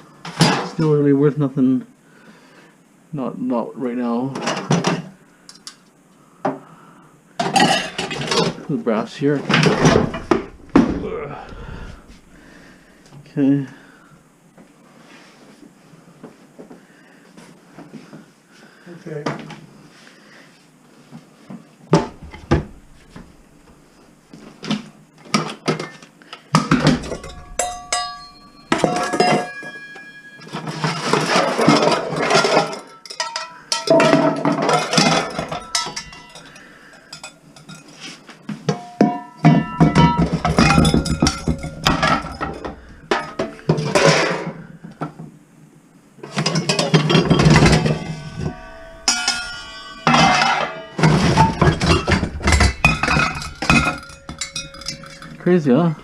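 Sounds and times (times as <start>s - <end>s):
metal pots and pans clanking: 7.4s - 8.6s, 9.5s - 12.6s, 22.0s - 24.0s, 25.4s - 38.0s, 38.6s - 44.6s, 46.2s - 55.5s
metallic ringing strikes: 22.0s - 24.2s, 26.6s - 31.5s, 47.2s - 56.0s.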